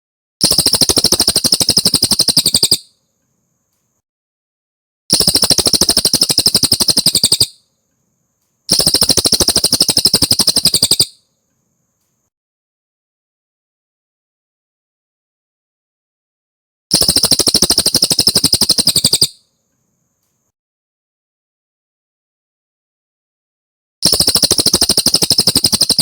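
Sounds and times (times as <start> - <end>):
bird rattling call: 0.4 - 2.9, 5.1 - 7.6, 8.7 - 11.2, 16.9 - 19.4, 24.0 - 26.0.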